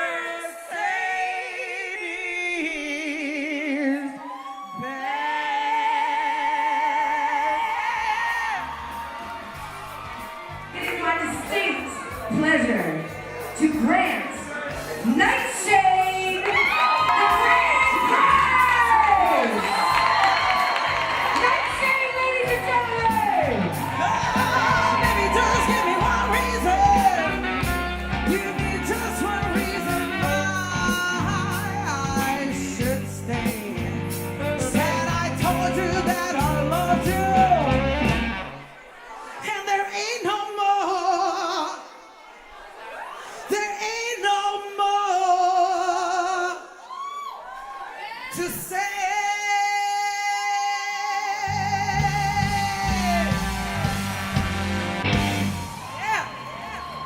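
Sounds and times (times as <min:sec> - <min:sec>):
rock music with singing: 0:00.0 - 0:38.7, 0:50.1 - 0:57.0
low guitar notes: 0:33.3 - 0:38.6, 0:51.5 - 0:55.8.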